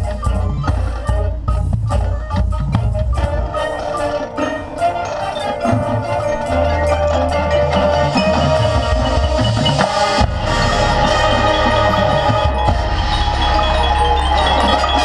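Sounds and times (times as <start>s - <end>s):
marching band music: 0.0s - 15.0s
ringing mallet percussion: 3.5s - 15.0s.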